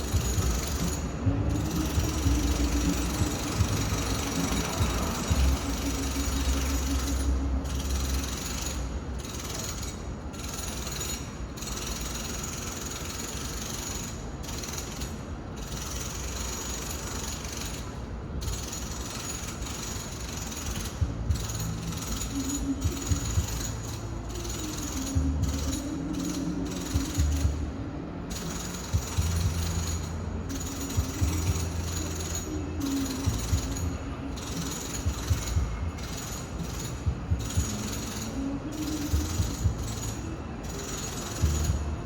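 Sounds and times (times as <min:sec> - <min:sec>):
construction tools rattling and grinding: 0:00.0 - 0:42.0.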